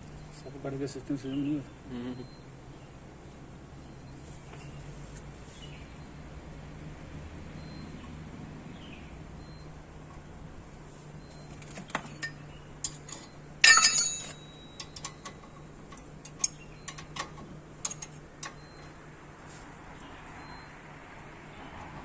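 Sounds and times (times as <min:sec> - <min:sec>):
metal tools clinking: 0:11.6 - 0:18.6
metal clattering: 0:12.0 - 0:15.5.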